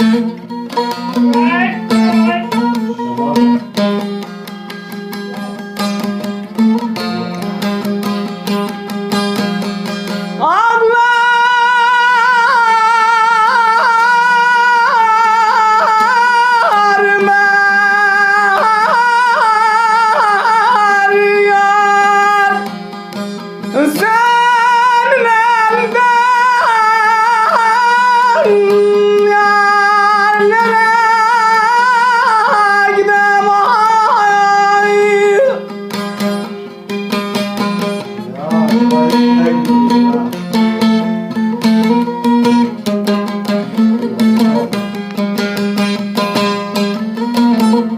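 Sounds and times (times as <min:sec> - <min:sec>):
person singing: 0:00.0 - 0:04.1, 0:10.4 - 0:22.7, 0:23.7 - 0:36.0, 0:38.0 - 0:42.7
plucked strings: 0:00.0 - 0:47.9.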